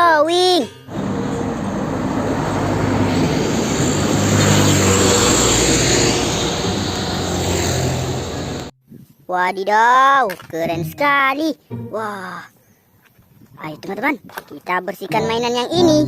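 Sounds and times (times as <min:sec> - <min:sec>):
low hum: 0:00.9 - 0:08.7.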